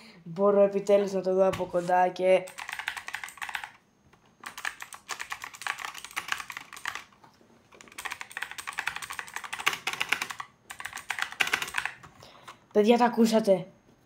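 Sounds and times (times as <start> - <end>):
fast typing on mechanical keyboard: 2.4 - 3.8, 4.4 - 12.2.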